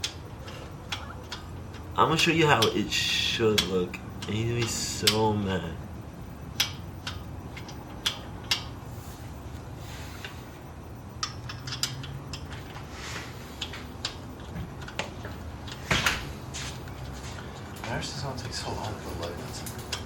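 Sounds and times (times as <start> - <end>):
steady low hum: 0.0 - 20.0
light clicks and knocks: 11.2 - 20.0.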